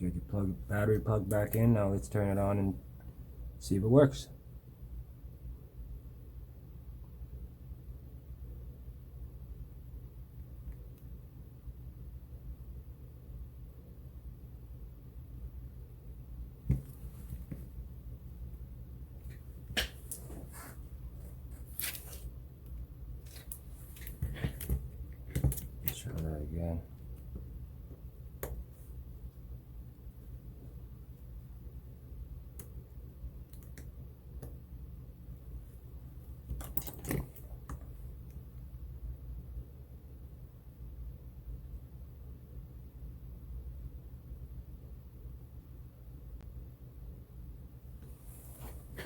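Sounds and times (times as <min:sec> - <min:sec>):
steady low hum: 0:00.0 - 0:49.0
rustling: 0:19.3 - 0:22.3
clicks and handling of phone and tools: 0:23.2 - 0:26.3, 0:36.5 - 0:38.0.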